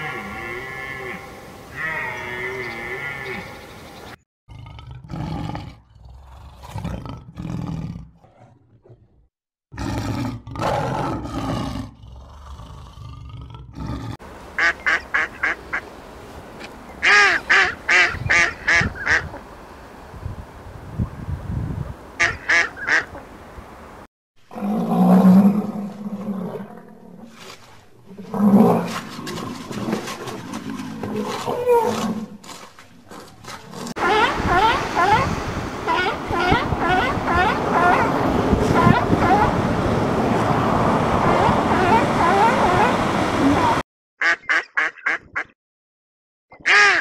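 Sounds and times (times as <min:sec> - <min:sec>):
low loud animal call: 0:00.0 - 0:03.7.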